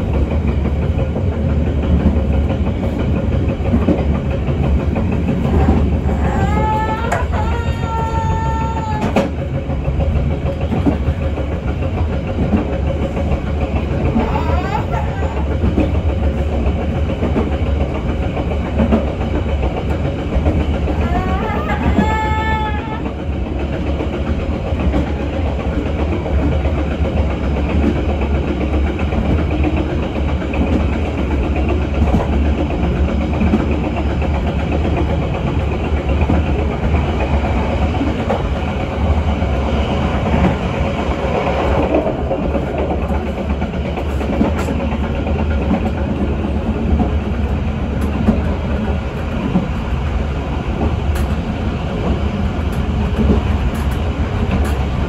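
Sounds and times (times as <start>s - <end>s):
train wheels on rail: 0.0s - 55.0s.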